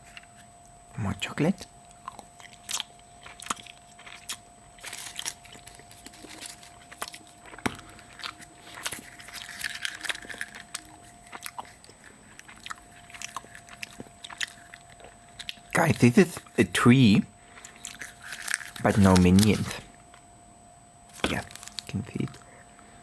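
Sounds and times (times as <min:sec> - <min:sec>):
chocolate shell breaking: 0:08.9 - 0:11.5.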